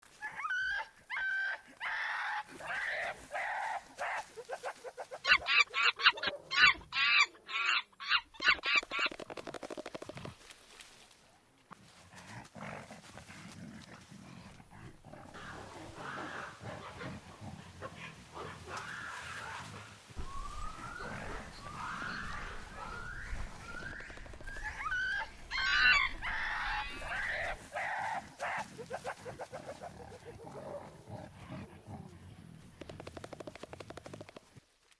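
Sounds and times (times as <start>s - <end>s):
monkeys screaming and calling: 0.4s - 9.2s, 15.2s - 16.9s, 18.7s - 30.1s.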